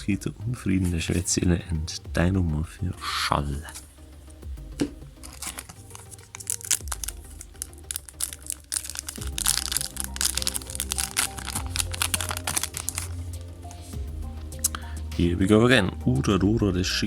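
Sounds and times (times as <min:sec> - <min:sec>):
background music: 0:00.0 - 0:17.0
foil wrapper crinkling: 0:05.2 - 0:13.6.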